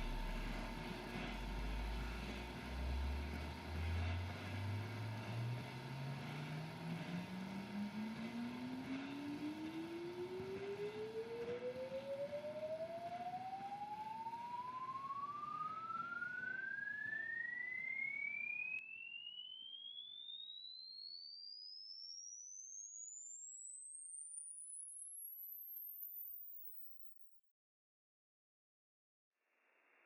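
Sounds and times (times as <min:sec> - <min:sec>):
steady noisy hiss: 0:00.0 - 0:07.6
electronic tone sweeping upward: 0:00.0 - 0:27.3.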